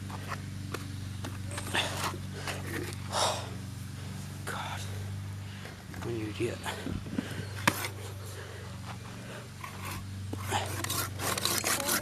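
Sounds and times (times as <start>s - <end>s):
steady low hum: 0.0s - 12.0s
hand saw cutting wood: 9.6s - 12.0s.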